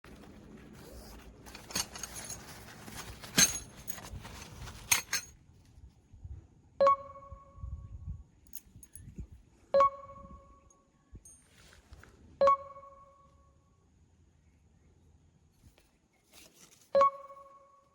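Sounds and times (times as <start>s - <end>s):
metal camping gear clinking: 0.1s - 5.4s.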